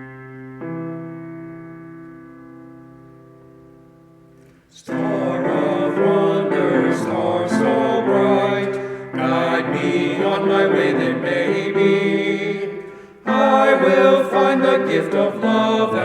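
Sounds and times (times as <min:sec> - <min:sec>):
men singing in harmony: 0:04.8 - 0:16.0.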